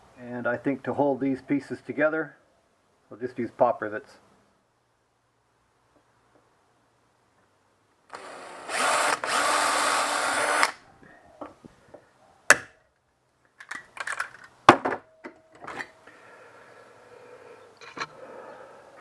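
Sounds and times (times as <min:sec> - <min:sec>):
electric drill boring through metal: 0:08.1 - 0:10.8.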